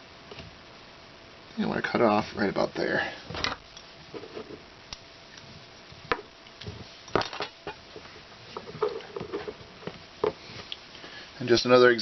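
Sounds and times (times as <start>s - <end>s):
small handling noises: 3.2s - 11.2s.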